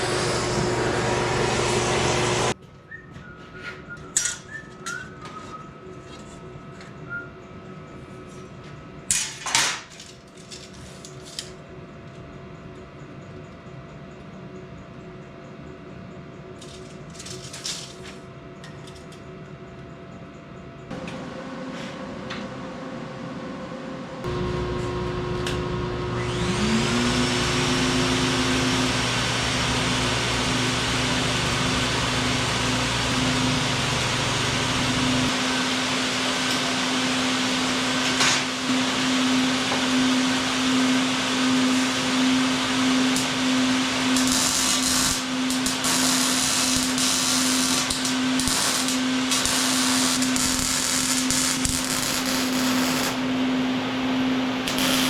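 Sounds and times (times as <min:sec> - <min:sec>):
power tool motor whining: 0:25.9 - 0:35.3, 0:54.7 - 0:55.0.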